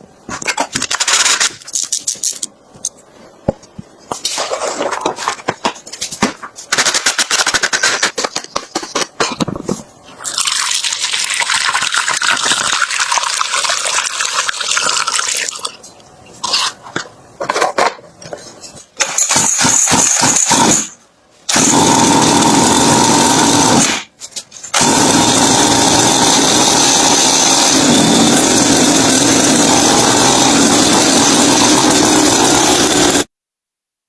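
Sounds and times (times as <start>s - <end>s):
dirt bike engine starting: 24.8s - 33.3s.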